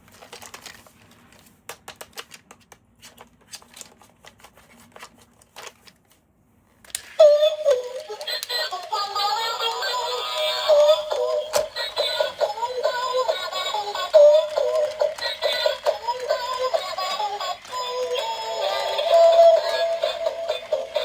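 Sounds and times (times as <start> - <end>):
tinny electronic toy song: 7.0 - 21.0.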